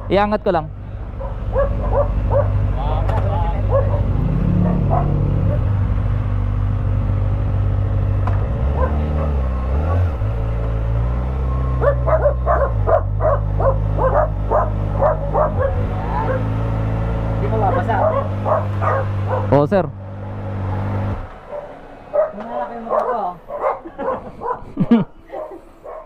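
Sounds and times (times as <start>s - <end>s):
dog barking rapidly: 1.2s - 2.6s, 3.6s - 5.7s, 8.7s - 10.1s, 11.8s - 16.6s, 17.6s - 19.6s, 21.5s - 26.0s.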